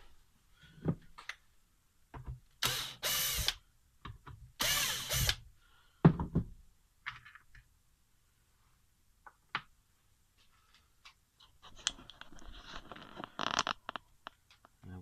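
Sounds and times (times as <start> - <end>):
power screwdriver running: 2.6 - 3.6, 4.6 - 5.4.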